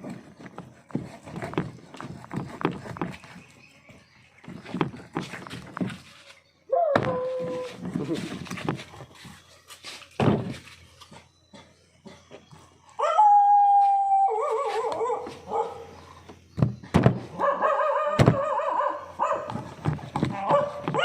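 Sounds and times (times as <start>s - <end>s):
dog howling: 6.7s - 7.8s, 13.0s - 15.8s.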